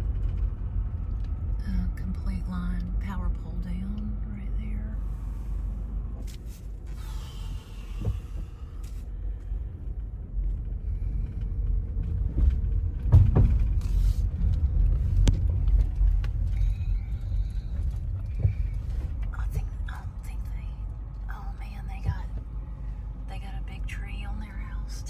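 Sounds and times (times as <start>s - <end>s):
car road and engine rumble: 0.0s - 25.0s
knocks from the car: 12.4s - 14.0s.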